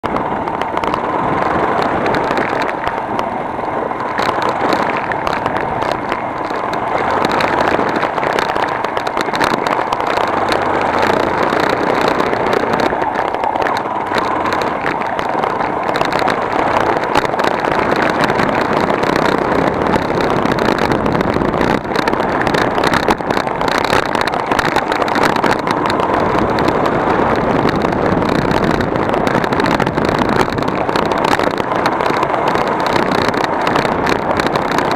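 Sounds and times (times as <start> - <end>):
knocks and rattles: 0.0 - 34.9
vehicle running noise: 0.0 - 34.9.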